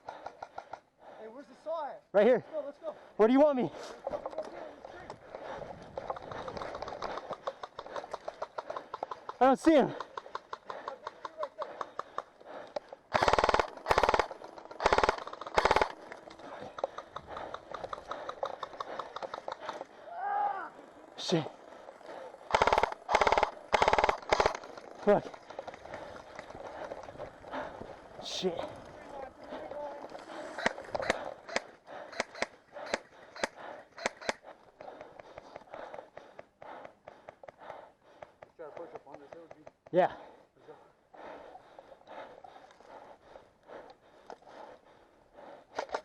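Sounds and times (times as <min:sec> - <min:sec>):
airsoft gunshots: 0:13.1 - 0:16.0, 0:22.5 - 0:24.7
airsoft gun full-auto bursts: 0:13.1 - 0:19.8, 0:22.5 - 0:25.2, 0:30.6 - 0:34.5.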